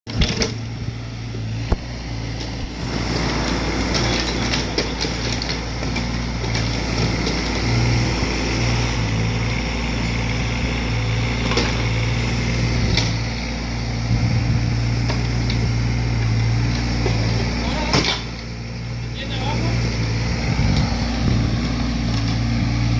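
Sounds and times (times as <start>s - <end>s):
diesel engine running: 0.1s - 22.9s.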